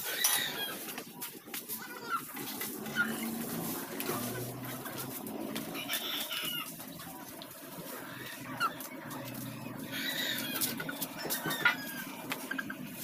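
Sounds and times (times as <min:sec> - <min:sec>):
bird-like calls: 0:07.9 - 0:13.0.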